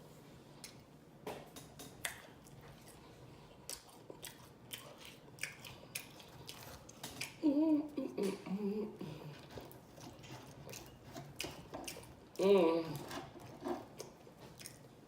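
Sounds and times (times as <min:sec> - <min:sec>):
person chewing food: 0:01.6 - 0:15.0
wet mouth clicks and lip smacks: 0:01.9 - 0:02.6.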